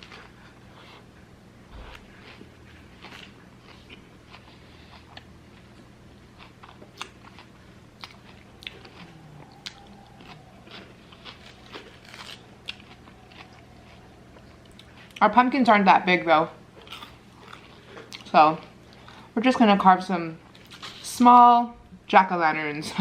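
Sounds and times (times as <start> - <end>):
person chewing crunchy food: 0.0 - 1.2, 1.8 - 15.2, 16.7 - 19.3.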